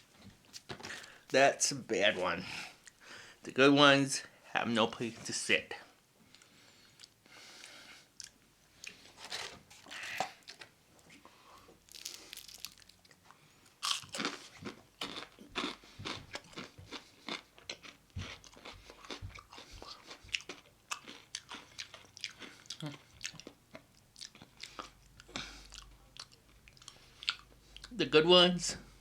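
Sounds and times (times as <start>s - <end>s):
crunching fried chicken: 11.9s - 27.9s.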